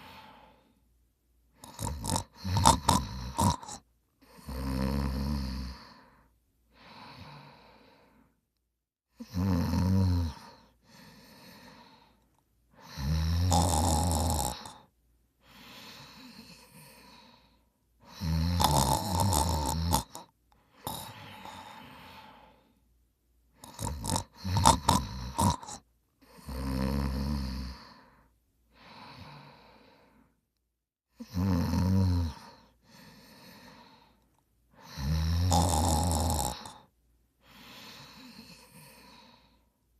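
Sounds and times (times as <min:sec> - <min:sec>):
person snoring: 0:00.0 - 0:00.7, 0:01.6 - 0:08.3, 0:09.2 - 0:12.2, 0:12.8 - 0:22.8, 0:23.6 - 0:30.3, 0:31.2 - 0:39.6
soft breaths: 0:00.0 - 0:02.5, 0:03.7 - 0:08.6, 0:10.2 - 0:13.1, 0:14.6 - 0:18.4, 0:20.1 - 0:24.6, 0:25.6 - 0:30.6, 0:32.2 - 0:35.1, 0:36.4 - 0:39.9.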